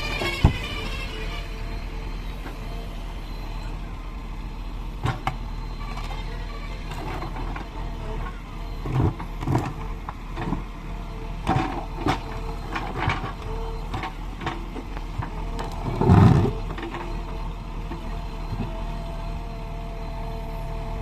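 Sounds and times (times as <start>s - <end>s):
backhoe engine running: 0.0s - 21.0s
clunks from digging arm and bucket: 6.9s - 10.7s, 11.4s - 17.2s.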